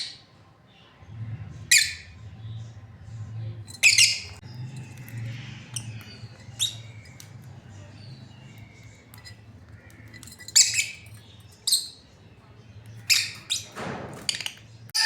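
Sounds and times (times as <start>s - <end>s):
lovebirds chirping: 0.0s - 15.0s.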